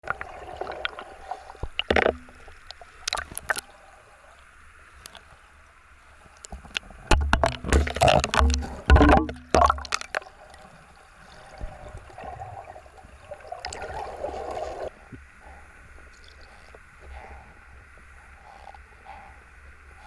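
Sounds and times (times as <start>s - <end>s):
water sloshing: 0.0s - 19.3s
low bumps of boat: 6.6s - 10.3s
knocks: 7.1s - 10.0s.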